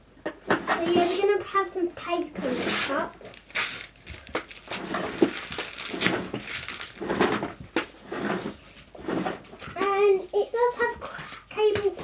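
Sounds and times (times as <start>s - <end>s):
paper rustling and tearing: 2.4s - 7.6s.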